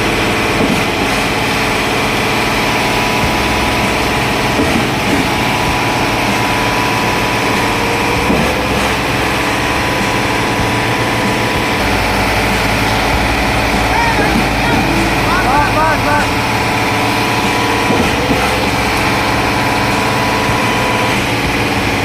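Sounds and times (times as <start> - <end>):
machine engine drone: 0.0 - 22.0.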